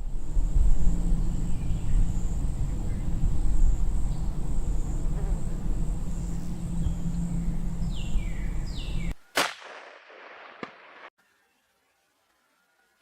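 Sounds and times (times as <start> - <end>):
wind-like rumble: 0.0 - 9.1
gunshot: 9.3 - 11.1.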